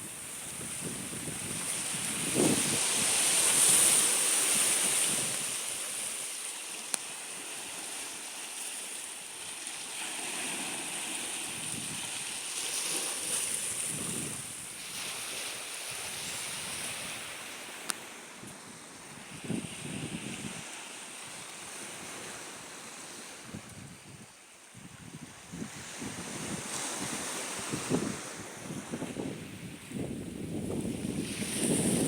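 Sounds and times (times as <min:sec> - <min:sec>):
wind on microphone: 0:00.0 - 0:05.8, 0:11.5 - 0:12.2, 0:13.3 - 0:17.4, 0:18.4 - 0:20.7, 0:23.4 - 0:32.0
surf washing in: 0:00.0 - 0:24.0, 0:25.2 - 0:32.0.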